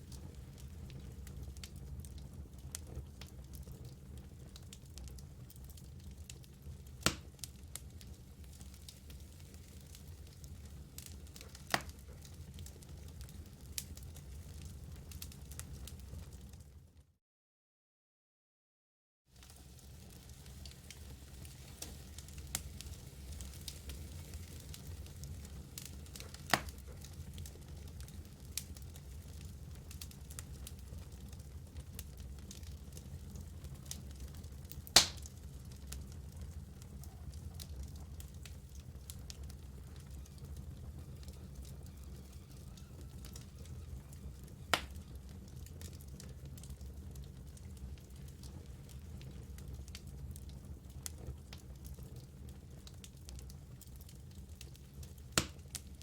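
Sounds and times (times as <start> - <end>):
wood fire rumbling: 0.0 - 16.8, 19.4 - 56.0
fire crackles: 0.0 - 17.1, 19.3 - 56.0
loud fire pop: 7.0 - 7.3, 34.9 - 35.3, 55.4 - 55.6
sharp pop of fire: 7.0 - 7.3, 11.7 - 12.0, 26.2 - 27.0, 34.9 - 35.3, 44.7 - 45.0, 55.4 - 55.7.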